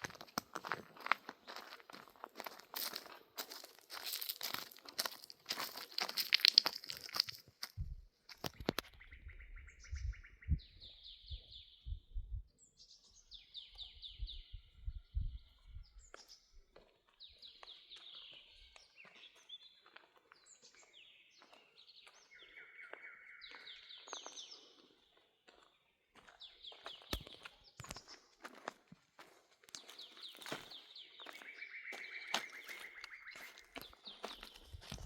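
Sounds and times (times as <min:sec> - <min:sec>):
dull low thumps: 0:07.8 - 0:08.1, 0:09.2 - 0:12.5, 0:14.0 - 0:16.0
songbird singing trilled phrases: 0:08.5 - 0:16.4, 0:29.9 - 0:34.8.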